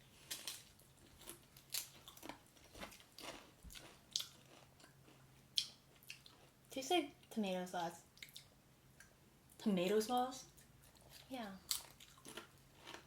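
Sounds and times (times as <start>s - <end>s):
person chewing crisps: 0.2s - 6.6s, 10.6s - 13.0s.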